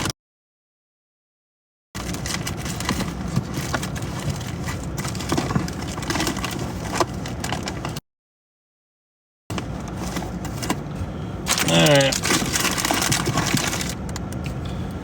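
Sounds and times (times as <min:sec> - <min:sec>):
steady rumbling background noise: 0:02.0 - 0:08.0, 0:09.5 - 0:15.0.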